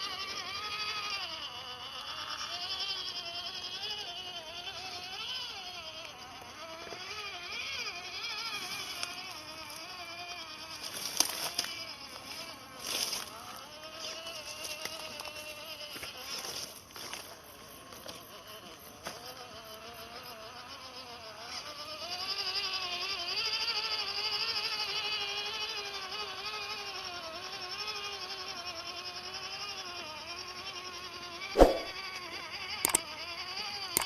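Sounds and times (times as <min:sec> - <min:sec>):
electric motor and gearbox whine: 0:00.0 - 0:34.0
click: 0:32.8 - 0:33.0.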